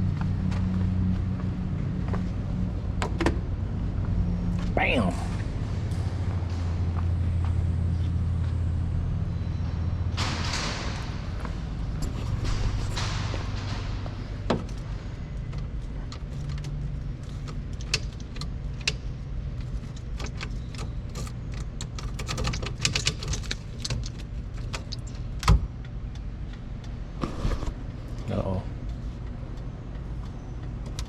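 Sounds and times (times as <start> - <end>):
small clicks and rattles: 15.4 - 27.0.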